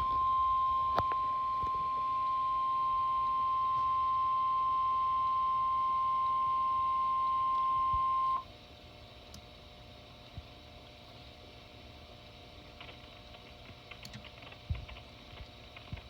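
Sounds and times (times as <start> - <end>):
steady warning alarm tone: 0.0 - 8.5
faint hum: 0.0 - 16.0.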